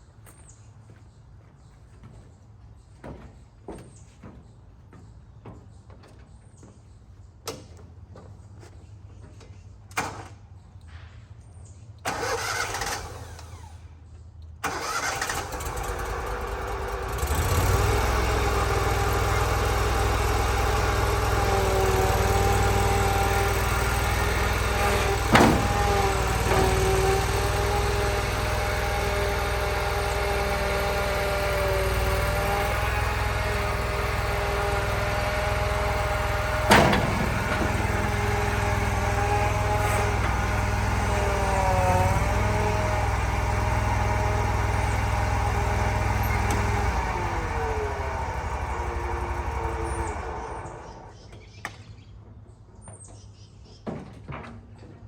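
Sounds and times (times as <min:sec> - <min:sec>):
mower engine cranking and running: 0:12.0 - 0:51.2
sharp clicks and knocks: 0:23.4 - 0:28.7, 0:34.2 - 0:41.5.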